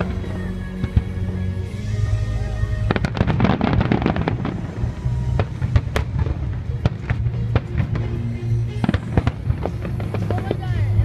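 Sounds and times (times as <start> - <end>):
fireworks bursting: 0.0 - 11.0
music playing: 0.0 - 11.0.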